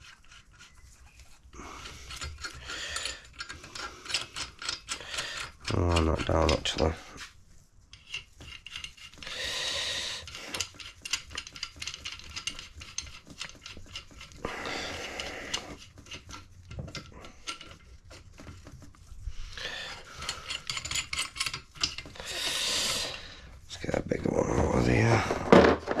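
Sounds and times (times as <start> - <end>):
metal hand tools clinking: 20.2 - 22.1.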